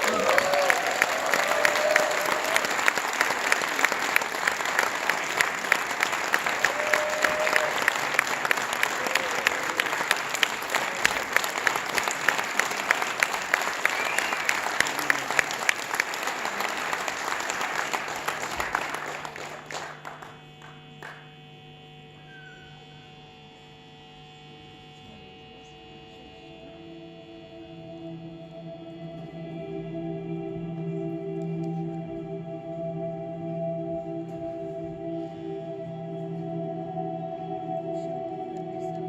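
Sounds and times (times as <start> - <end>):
audience applauding: 0.0 - 21.4
soft held musical tones: 23.1 - 39.0.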